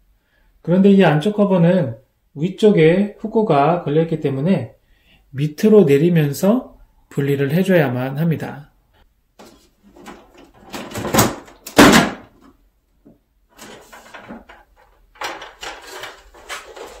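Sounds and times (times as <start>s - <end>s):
plastic scraping and clattering: 9.4s - 12.6s, 13.5s - 17.0s.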